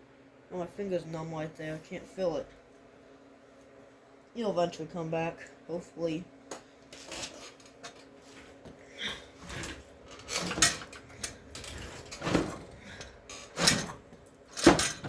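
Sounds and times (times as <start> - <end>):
tools knocking and clattering: 9.5 - 15.0.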